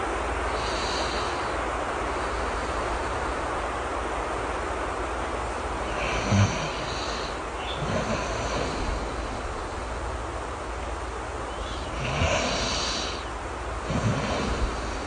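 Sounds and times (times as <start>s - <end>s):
person snoring softly: 0.0s - 1.6s, 5.8s - 9.8s, 11.6s - 15.0s
rain hissing: 0.0s - 15.0s.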